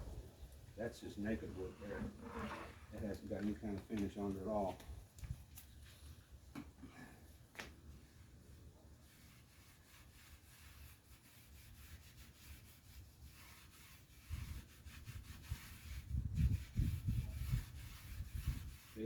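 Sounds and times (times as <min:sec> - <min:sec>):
low bumps: 0:00.0 - 0:04.0
cloth scrubbing on wood: 0:00.8 - 0:04.7, 0:09.0 - 0:19.0.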